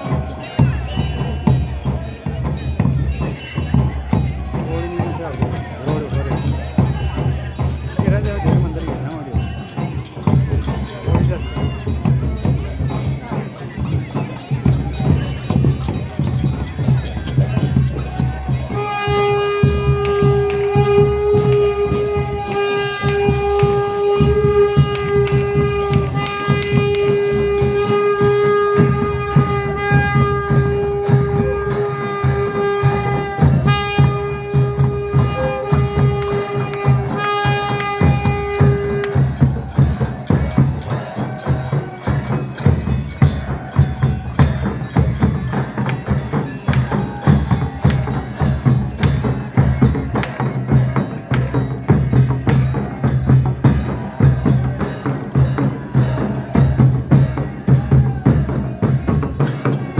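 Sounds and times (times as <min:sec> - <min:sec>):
fast percussion beat: 0:00.0 - 0:59.9
tambourine jingles: 0:00.0 - 0:59.9
long held note: 0:18.7 - 0:39.2.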